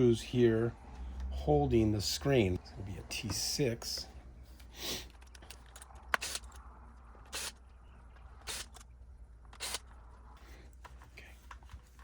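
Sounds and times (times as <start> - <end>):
low steady hum: 0.0 - 12.0
screwdriver clicks and scrapes: 5.0 - 7.6.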